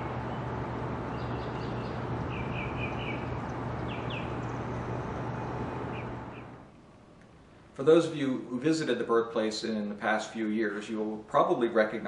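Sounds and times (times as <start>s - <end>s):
street background hum: 0.0s - 9.0s
small bird chirping: 1.1s - 6.6s.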